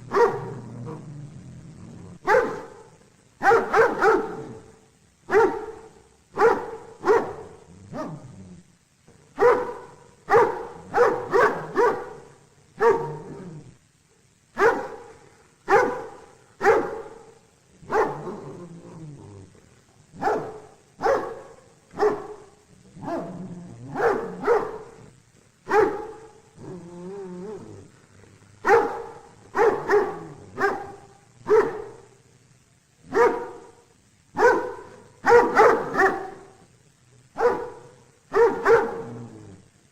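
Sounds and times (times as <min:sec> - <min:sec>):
dog barking: 0:00.0 - 0:00.7, 0:02.2 - 0:04.7, 0:05.3 - 0:08.3, 0:09.4 - 0:13.5, 0:14.6 - 0:18.6, 0:20.2 - 0:26.4, 0:28.6 - 0:32.2, 0:33.1 - 0:33.8, 0:34.4 - 0:36.6, 0:37.4 - 0:39.3.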